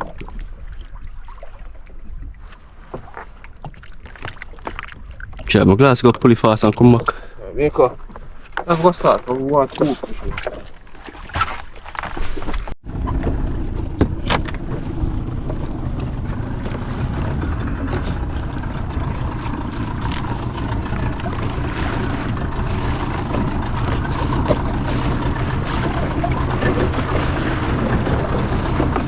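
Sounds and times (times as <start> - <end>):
boat engine running: 0.0 - 29.0
water noise: 0.0 - 29.0
wind: 0.0 - 29.0.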